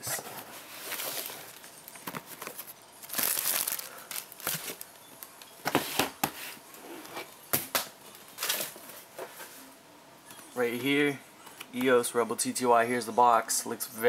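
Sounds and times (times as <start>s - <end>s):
packaging crinkling and tearing: 0.9s - 4.9s.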